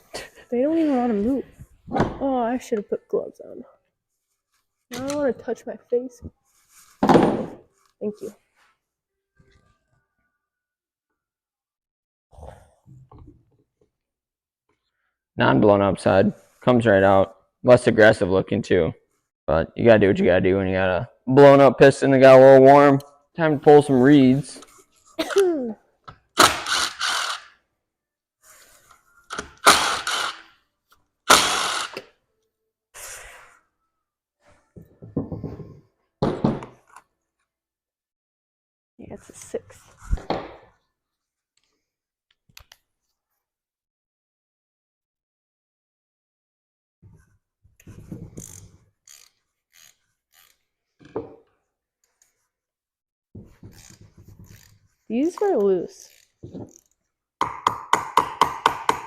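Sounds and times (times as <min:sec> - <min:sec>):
hand ratchet clicking: 0:26.4 - 0:27.5, 0:29.3 - 0:30.5, 0:31.3 - 0:32.0, 0:48.4 - 0:50.6, 0:53.7 - 0:57.0
ratchet wrench clicking: 0:48.4 - 0:50.6.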